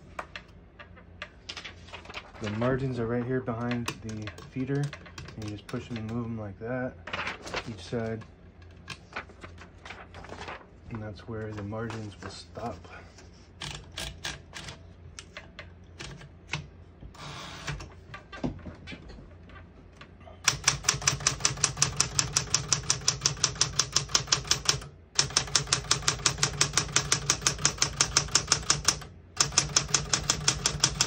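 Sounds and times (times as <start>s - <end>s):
typewriter keystrokes: 2.4s - 6.2s, 20.5s - 31.0s.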